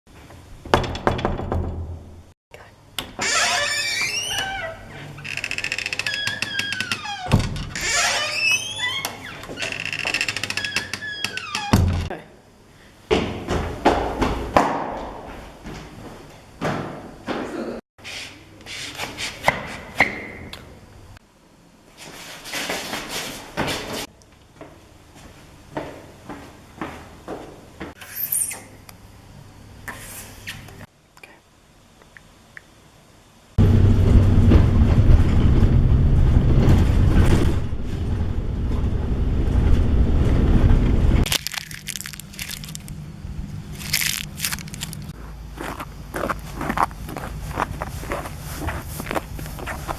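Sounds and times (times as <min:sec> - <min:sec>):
steady low hum: 0:28.8 - 0:49.9
loud crushing and crunching: 0:41.3 - 0:43.0, 0:43.7 - 0:49.9
sharp crackles: 0:41.3 - 0:43.0, 0:43.7 - 0:49.7
rubbing and scraping: 0:43.8 - 0:49.9.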